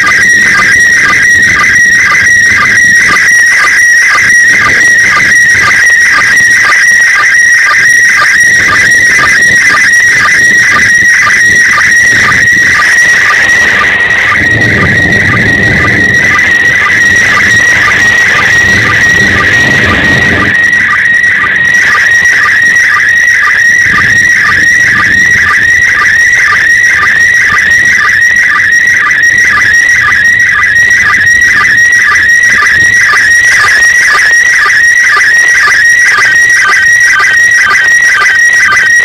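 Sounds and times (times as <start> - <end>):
short lower sync beeps: 0.0 - 39.0
steady high radio tone: 0.0 - 39.0.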